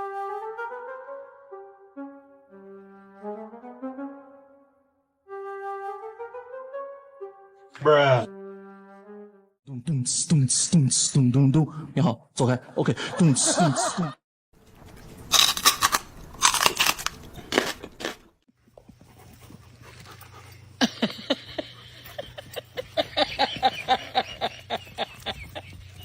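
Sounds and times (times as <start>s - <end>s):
loud crunching bites: 14.7s - 18.3s.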